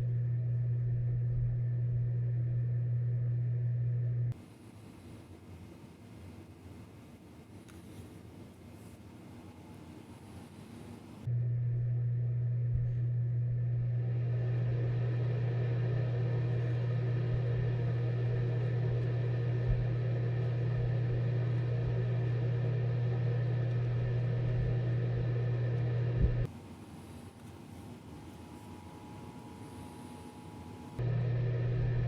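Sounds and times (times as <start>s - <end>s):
duct fan humming: 0.0s - 4.6s, 11.2s - 26.7s, 28.1s - 32.0s
fan airflow whir: 0.0s - 32.0s.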